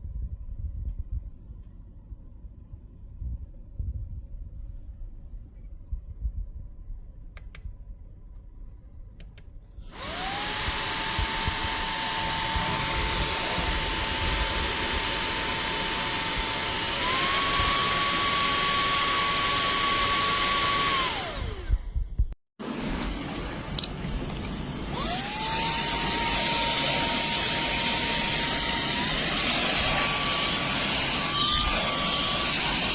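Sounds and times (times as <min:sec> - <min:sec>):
handheld vacuum cleaner whine: 0:09.7 - 0:22.0, 0:22.7 - 0:32.9.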